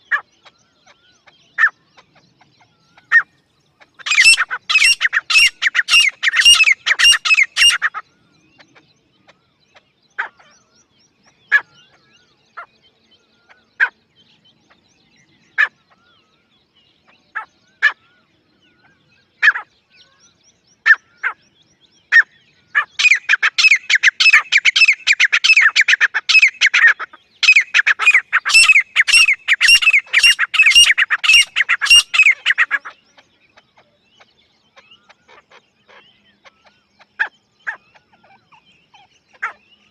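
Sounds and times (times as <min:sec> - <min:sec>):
francolin calling: 0:02.6 - 0:08.8, 0:22.1 - 0:33.9.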